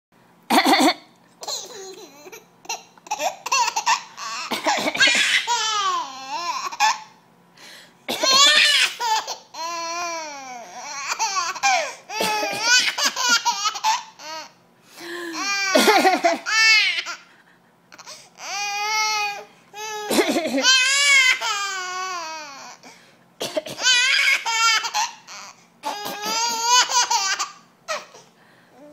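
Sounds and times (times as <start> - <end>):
baby laughing: 0.5 - 7.1, 8.1 - 14.5, 15.3 - 22.8, 23.8 - 28.3
adult fake coughing: 8.1 - 8.5.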